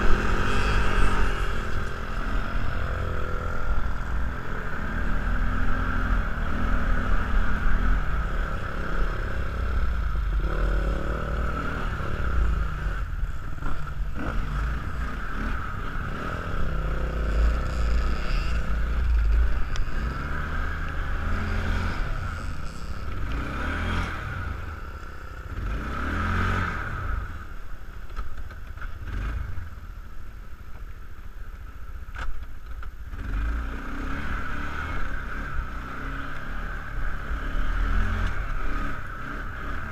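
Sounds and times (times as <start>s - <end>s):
atv engine revving: 0.0s - 27.5s, 29.0s - 29.7s, 33.1s - 39.9s.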